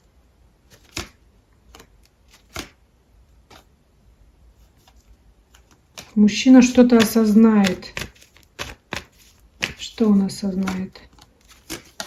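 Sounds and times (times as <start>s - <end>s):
cards tapping on a table: 6.0s - 9.9s, 10.6s - 12.0s.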